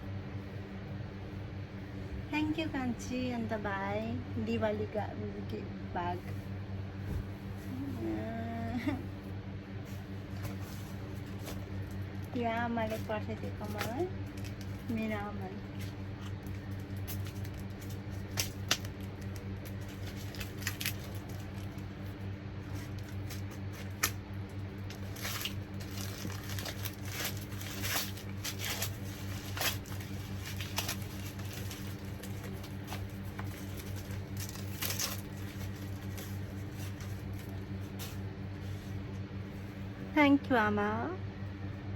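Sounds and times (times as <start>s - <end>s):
steady low hum: 0.0s - 41.9s
gift packaging rustling: 10.3s - 39.0s.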